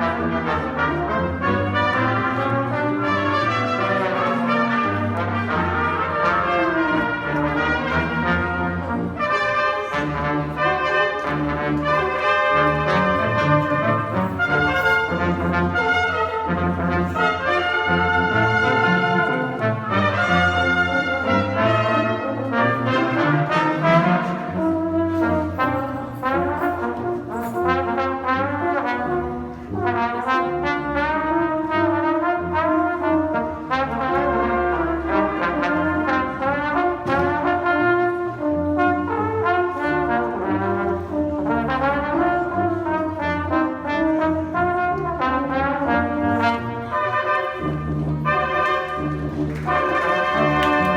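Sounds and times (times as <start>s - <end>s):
concert band playing: 45.8s - 50.9s.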